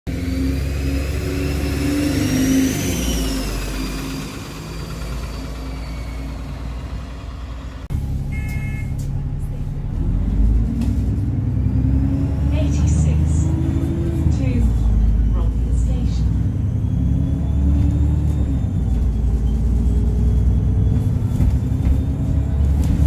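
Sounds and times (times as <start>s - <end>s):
bus diesel engine pulling away: 0.1s - 23.0s
short electronic beep: 8.2s - 9.0s.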